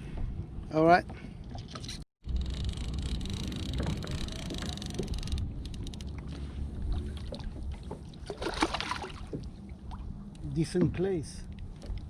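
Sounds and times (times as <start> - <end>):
water sloshing against kayak hull: 2.7 - 12.0
sharp knocks or splashes: 6.8 - 10.1.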